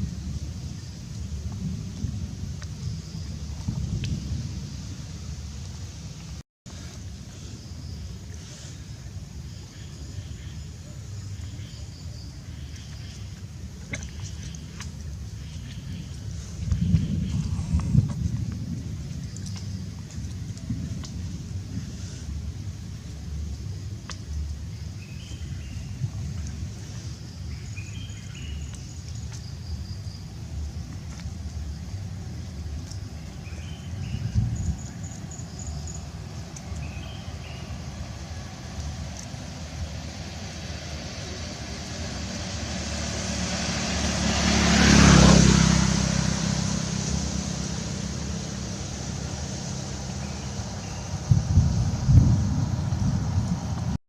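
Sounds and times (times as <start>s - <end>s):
low outdoor rumble: 0.0s - 54.0s
motor vehicle passing: 25.2s - 54.0s.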